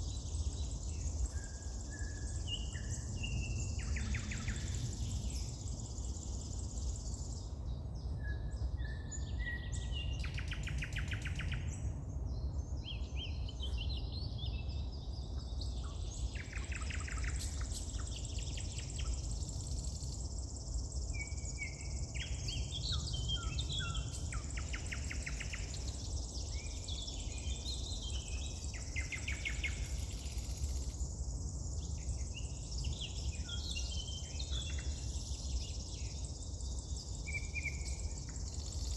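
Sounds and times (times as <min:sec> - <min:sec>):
songbirds singing: 0:00.0 - 0:38.9.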